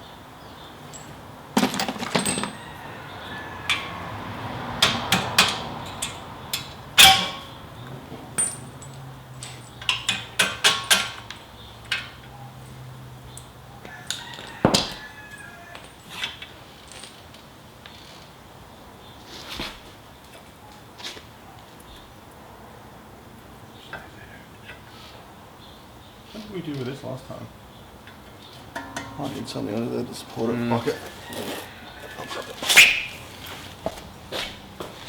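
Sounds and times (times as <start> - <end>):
metal tools clinking and clanking: 0.8 - 3.9, 4.8 - 7.6, 8.3 - 13.5, 28.0 - 35.0.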